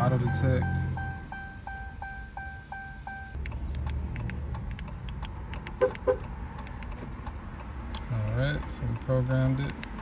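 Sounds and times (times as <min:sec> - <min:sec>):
car warning chime beeping: 0:00.0 - 0:03.4.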